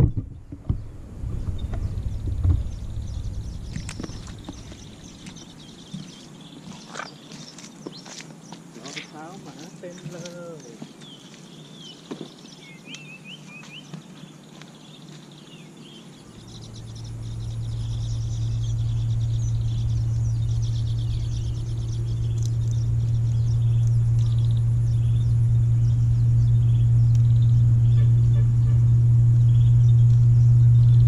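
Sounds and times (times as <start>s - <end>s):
steady low rumble: 0.0s - 7.2s, 16.1s - 31.0s
birds chirping: 0.0s - 31.0s.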